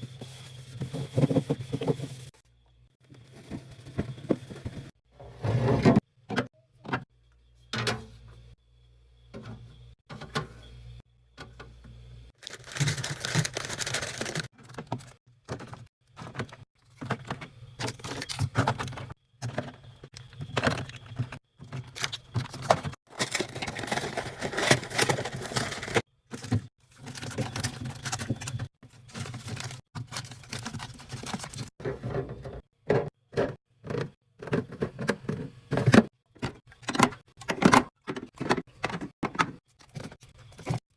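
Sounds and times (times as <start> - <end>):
items clicking and clattering: 12.4 - 40.9.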